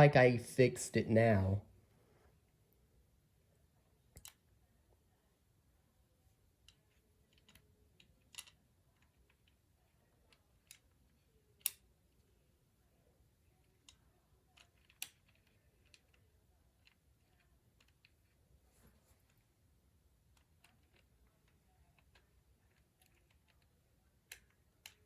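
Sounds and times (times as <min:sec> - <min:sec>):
plastic toy parts clicking: 0:06.6 - 0:09.6, 0:11.6 - 0:11.8, 0:13.8 - 0:16.2, 0:20.4 - 0:25.0.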